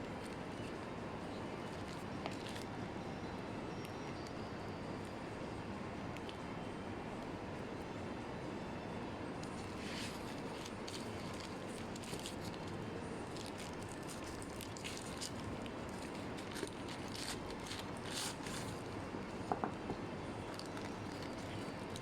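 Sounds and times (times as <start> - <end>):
packaging rustling and clicking: 9.5 - 18.9, 20.5 - 22.0.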